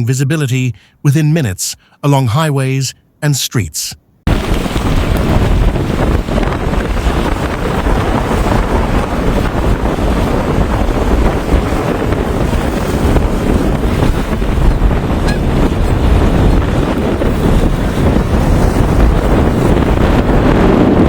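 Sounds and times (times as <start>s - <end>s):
strong wind buffeting microphone: 4.3s - 21.0s.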